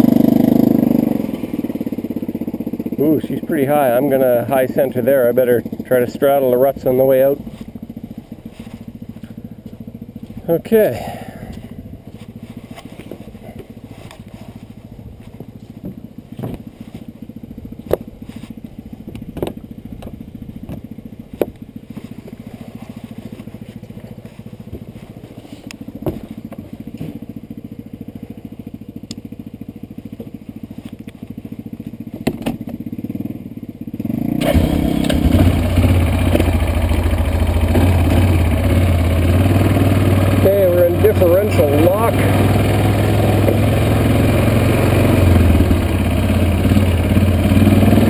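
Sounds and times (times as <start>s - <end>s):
vehicle engine running: 0.0s - 48.0s
sharp knocks and clunks: 15.8s - 16.7s, 19.1s - 20.8s, 26.0s - 27.2s, 32.2s - 32.8s.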